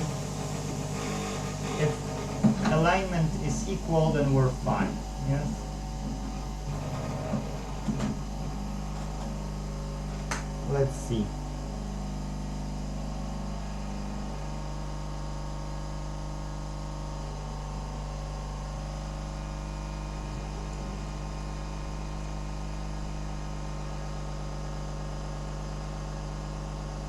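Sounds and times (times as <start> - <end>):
fan noise: 0.0 - 15.0
electrical hum: 0.0 - 27.0.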